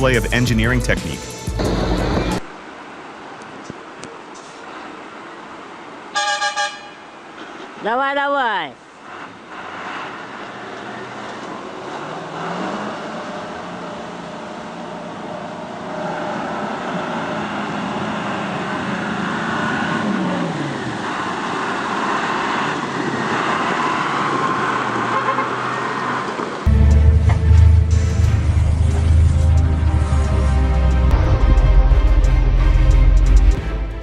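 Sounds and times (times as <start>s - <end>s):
steady rush of noise: 1.4s - 6.1s, 26.1s - 34.0s
heavy vehicle engine under load: 8.8s - 33.6s.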